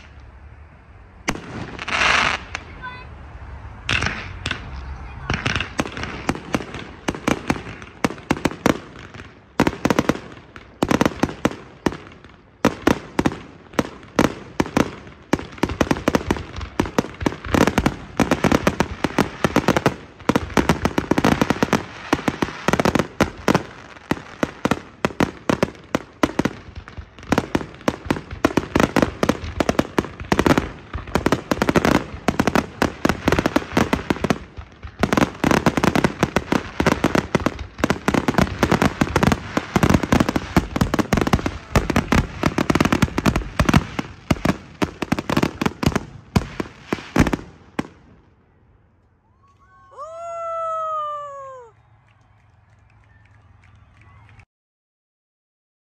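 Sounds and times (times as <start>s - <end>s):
fireworks bangs and crackles: 0.0s - 0.4s, 1.2s - 48.4s.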